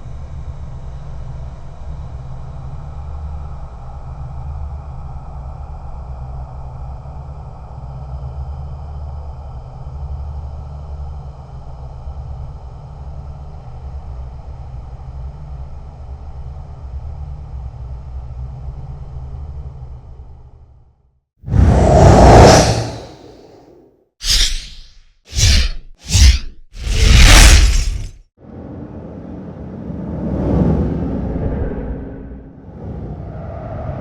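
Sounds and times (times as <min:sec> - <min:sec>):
low rumbling drone: 0:21.5 - 0:29.6.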